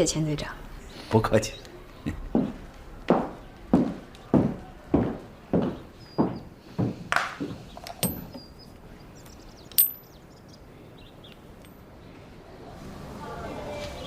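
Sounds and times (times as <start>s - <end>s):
footsteps on hard floor: 2.4s - 7.6s.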